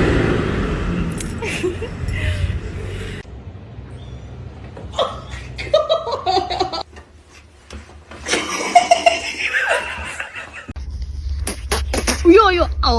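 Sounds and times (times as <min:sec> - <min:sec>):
people laughing: 0:01.4 - 0:02.9, 0:05.0 - 0:06.8, 0:08.3 - 0:10.7.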